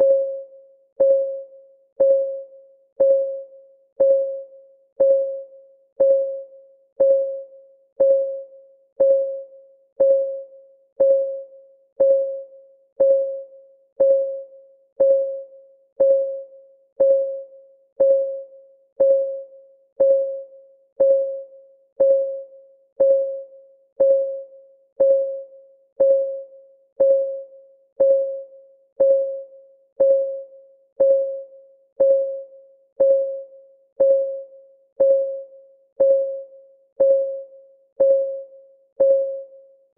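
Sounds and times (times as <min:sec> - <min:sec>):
countdown timer ticking: 0:03.0 - 0:03.4, 0:04.0 - 0:04.4, 0:05.0 - 0:05.4, 0:06.0 - 0:06.4, 0:07.0 - 0:07.4, 0:08.0 - 0:08.4, 0:09.0 - 0:09.4, 0:10.0 - 0:10.4, 0:11.0 - 0:11.4, 0:12.0 - 0:12.4, 0:13.0 - 0:13.4, 0:16.0 - 0:16.4, 0:17.0 - 0:17.4, 0:18.0 - 0:18.4, 0:19.0 - 0:19.4, 0:20.0 - 0:20.4, 0:21.0 - 0:21.4, 0:22.0 - 0:22.4, 0:24.0 - 0:24.4, 0:25.0 - 0:25.4, 0:26.0 - 0:26.4, 0:27.0 - 0:27.4, 0:29.0 - 0:29.4, 0:30.0 - 0:30.4, 0:31.0 - 0:31.4, 0:32.0 - 0:32.4, 0:33.0 - 0:33.4, 0:34.0 - 0:34.4, 0:35.0 - 0:35.4, 0:36.0 - 0:38.4, 0:39.0 - 0:39.5.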